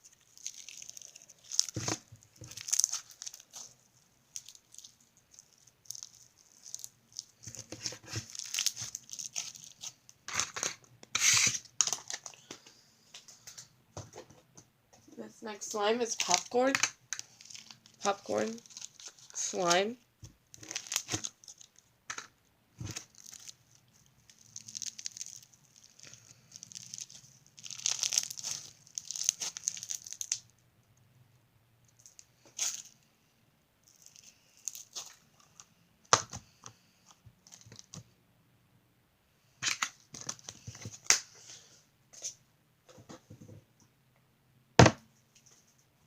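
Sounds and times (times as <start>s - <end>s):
hands squishing crackly slime: 0.0s - 12.5s, 16.0s - 21.9s, 22.8s - 30.5s, 31.9s - 33.0s, 33.8s - 38.1s.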